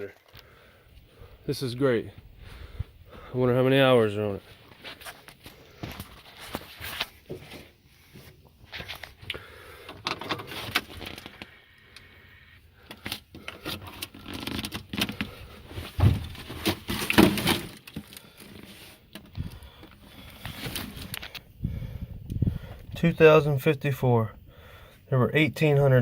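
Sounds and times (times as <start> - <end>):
clicks and rattles of handling: 8.7 - 11.5, 12.8 - 21.4.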